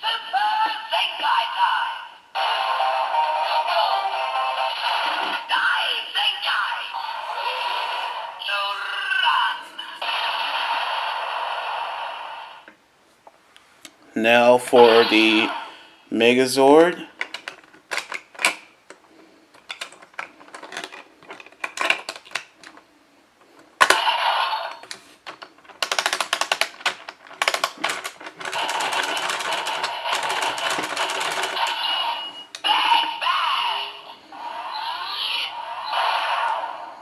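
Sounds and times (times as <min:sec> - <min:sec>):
plastic toy clicks: 0:17.2 - 0:22.8, 0:23.8 - 0:32.6
rapid clicking: 0:24.8 - 0:31.8
toy electronic sound effects: 0:31.5 - 0:36.6.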